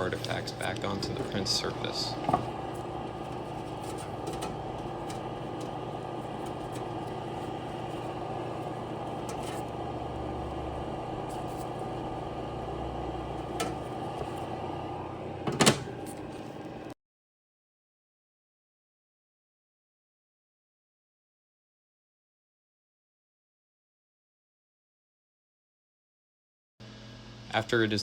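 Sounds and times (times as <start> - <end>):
fan motor humming: 0.0 - 16.9.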